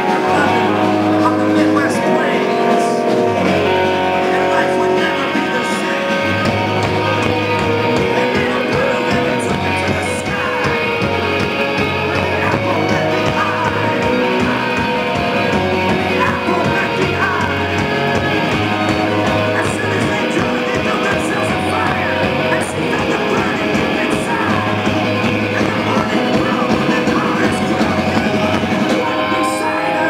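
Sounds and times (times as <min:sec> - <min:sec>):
electric guitars: 0:00.0 - 0:30.0
rock band playing live: 0:00.0 - 0:30.0.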